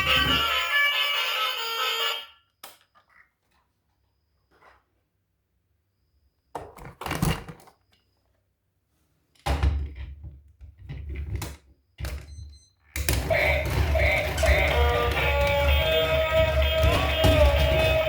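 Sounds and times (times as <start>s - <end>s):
music: 0.0s - 2.4s, 13.1s - 18.0s
knocks and clattering thuds: 13.0s - 18.0s.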